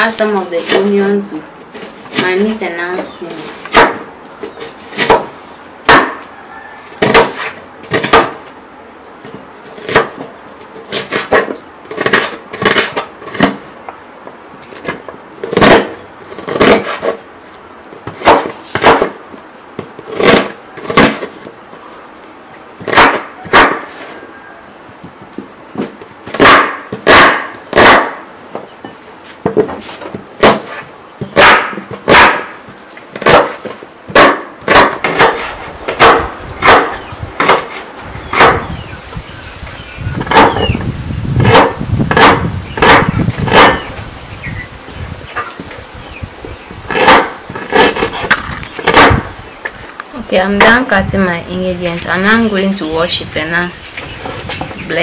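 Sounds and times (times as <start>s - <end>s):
knife chopping on cutting board: 26.4s - 28.2s, 33.2s - 37.8s.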